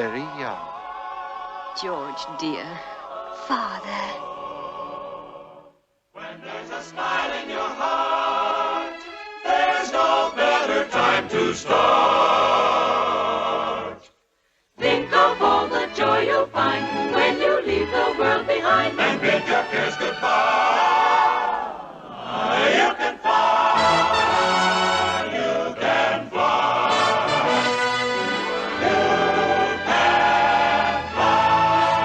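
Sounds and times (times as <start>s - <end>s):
orchestral music with choir: 0.0s - 32.0s
choir holding a note: 14.8s - 32.0s.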